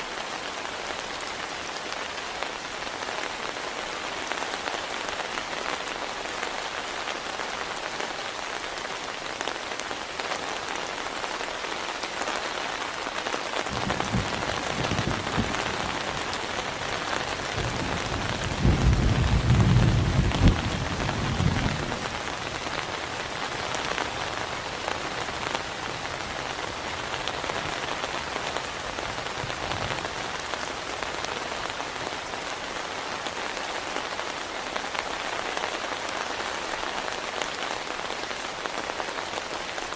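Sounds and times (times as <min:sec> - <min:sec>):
heavy rain falling: 0:00.0 - 0:39.9
thunder rumble: 0:13.7 - 0:16.5, 0:17.5 - 0:22.2.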